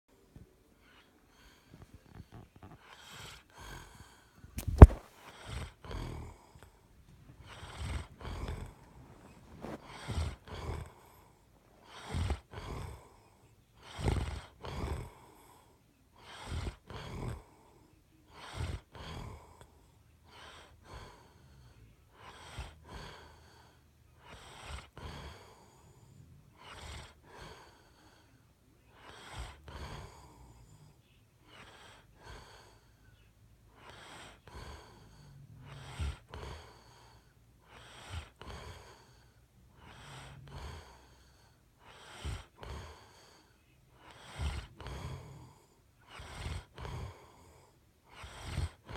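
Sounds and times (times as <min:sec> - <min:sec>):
person snoring: 0:00.8 - 0:06.7, 0:07.4 - 0:13.2, 0:33.8 - 0:48.9.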